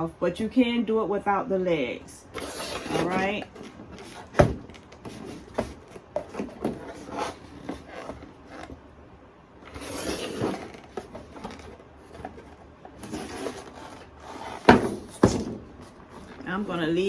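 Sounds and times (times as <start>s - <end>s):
paper rustling: 2.3s - 8.8s, 9.6s - 17.0s.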